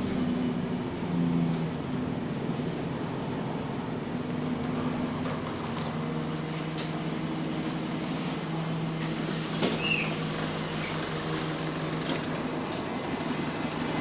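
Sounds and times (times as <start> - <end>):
bus engine with turbo whine: 0.0 - 14.0
brief squeak: 9.6 - 10.2.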